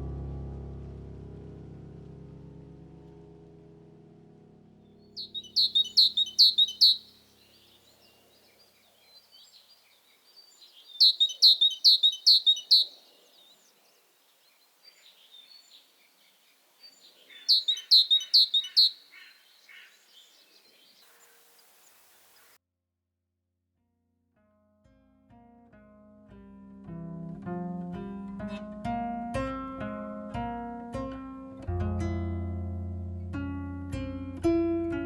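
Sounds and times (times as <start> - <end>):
soft bird chirps: 5.0 - 22.6
songbird singing downward notes: 5.1 - 22.6.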